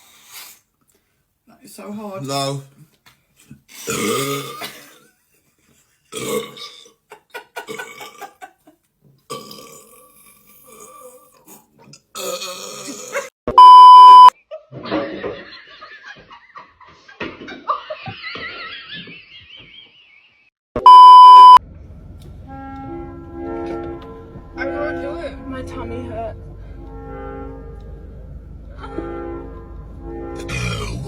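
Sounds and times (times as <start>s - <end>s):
people burping: 3.8s - 5.1s, 6.1s - 8.4s, 9.3s - 13.3s, 30.5s - 31.0s
loud one-tone bleep: 13.5s - 14.3s, 20.8s - 21.6s.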